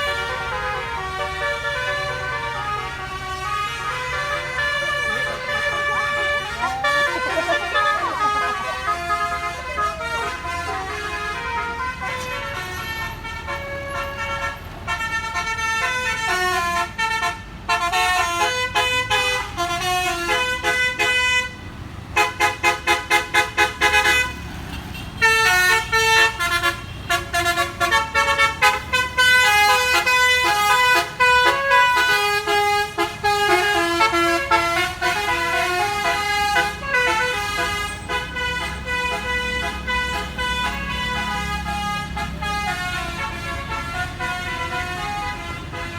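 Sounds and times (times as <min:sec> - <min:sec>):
multi-tone bus air horn melody: 0:00.0 - 0:45.9
low engine rumble: 0:00.5 - 0:15.0.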